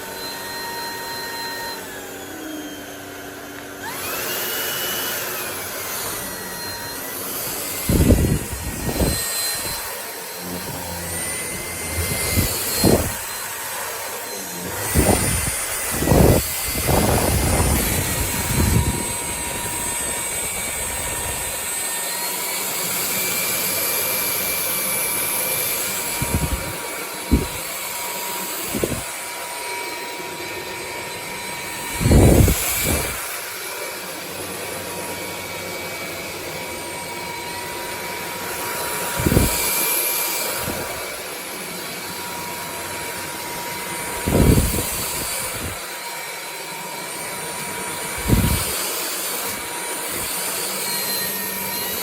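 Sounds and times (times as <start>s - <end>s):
stick vacuum whining: 0.0s - 52.0s.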